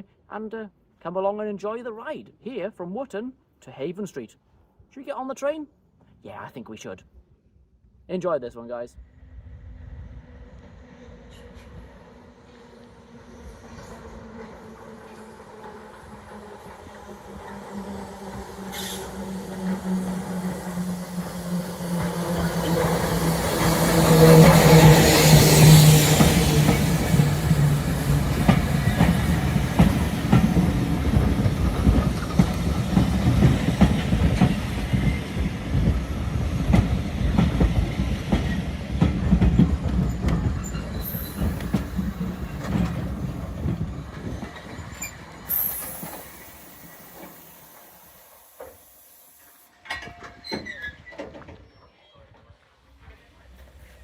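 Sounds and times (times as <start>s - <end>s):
train rumble: 9.0s - 54.0s
train wheels clicking and squealing: 11.2s - 52.2s.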